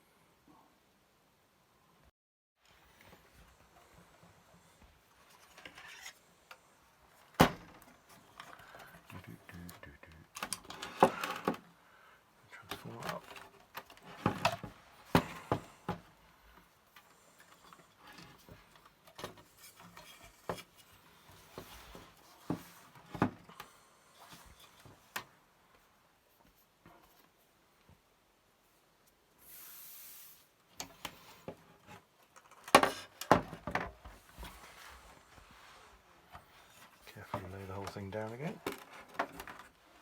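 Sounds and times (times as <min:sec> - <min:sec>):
short hiss: 0:29.4 - 0:30.5.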